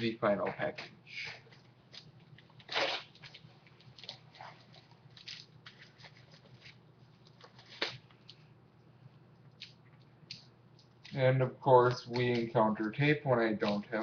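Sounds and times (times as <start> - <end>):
low steady hum: 0.0 - 14.0
package rustling and crinkling: 1.5 - 8.4.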